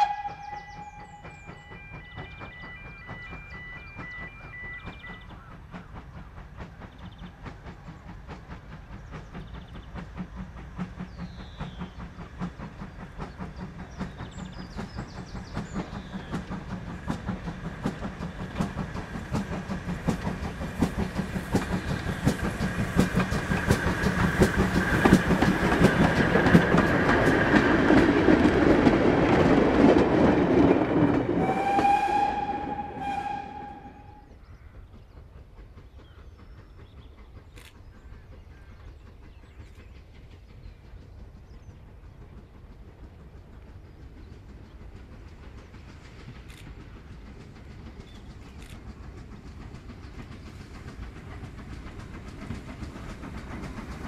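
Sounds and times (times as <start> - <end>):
steam whistle: 0.0 - 1.4, 31.4 - 34.3
birds chirping: 0.0 - 6.2
steam locomotive exhaust beats: 0.0 - 54.0
train wheel noise: 0.0 - 54.0.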